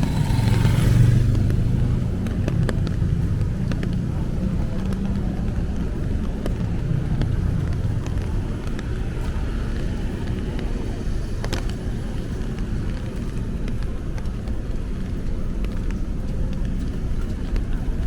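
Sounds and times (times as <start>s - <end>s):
tyres hissing on wet road: 0.0s - 1.9s
low rumble of traffic: 0.0s - 18.0s.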